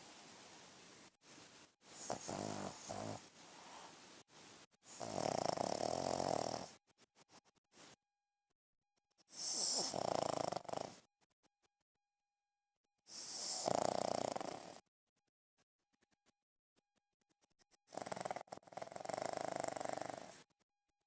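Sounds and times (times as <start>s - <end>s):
dog snoring loudly: 2.0s - 3.8s, 4.9s - 6.7s, 9.3s - 11.0s, 13.1s - 14.8s, 17.9s - 20.4s.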